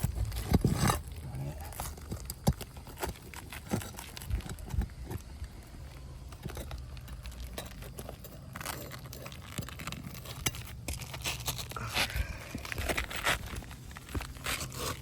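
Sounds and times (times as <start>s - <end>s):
tools scraping roof shingles: 0.0s - 15.0s
steady low rumble: 4.2s - 15.0s.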